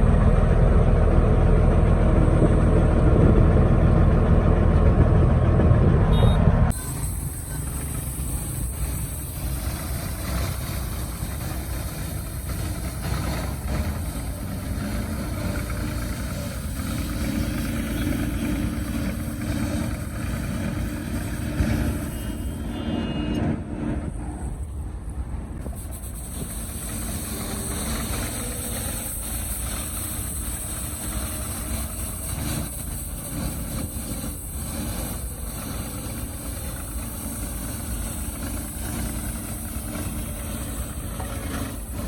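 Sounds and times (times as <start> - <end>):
heavy machinery engine running: 0.0 - 42.0
short high tone: 21.8 - 23.7.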